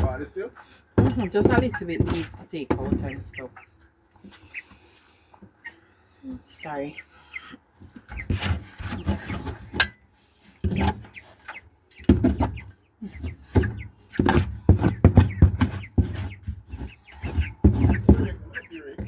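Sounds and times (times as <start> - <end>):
sharp knocks: 13.5 - 19.0.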